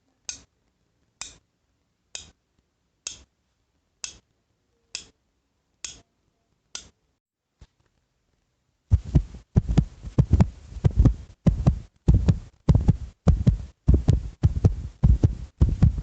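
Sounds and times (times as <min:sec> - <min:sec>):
sharp ticks or taps: 0:02.1 - 0:02.4, 0:03.0 - 0:03.3, 0:04.0 - 0:04.2.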